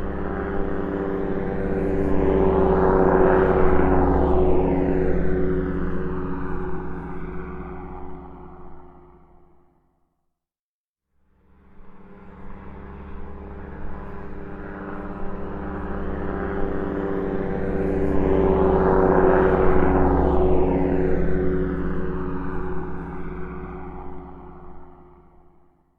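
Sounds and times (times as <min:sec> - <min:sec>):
airplane engine flying over: 0:00.0 - 0:09.3, 0:11.5 - 0:25.4.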